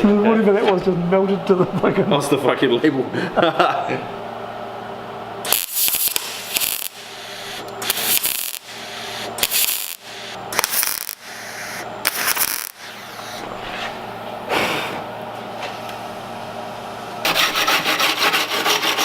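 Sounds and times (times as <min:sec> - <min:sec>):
welder arc crackling: 0:05.4 - 0:13.4.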